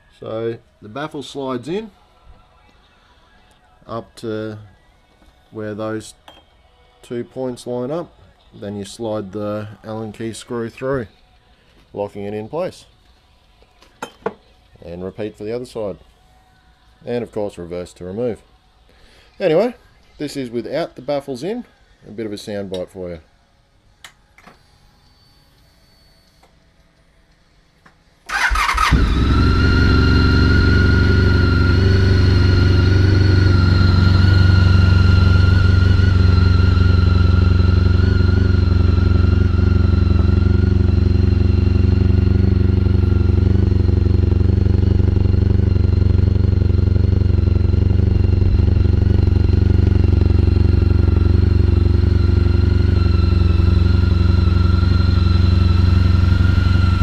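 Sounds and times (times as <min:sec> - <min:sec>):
motorcycle engine idling loudly: 0:28.3 - 0:57.0.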